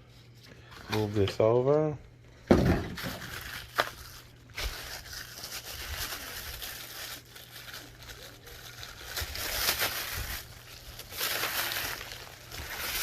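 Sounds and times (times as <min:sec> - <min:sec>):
wrapping crinkling and tearing: 0:03.0 - 0:13.0.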